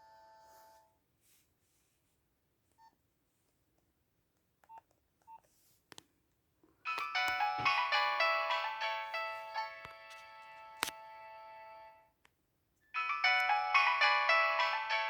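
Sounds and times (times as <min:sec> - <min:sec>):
mobile phone ringtone note: 0:06.9 - 0:12.0, 0:13.0 - 0:15.0.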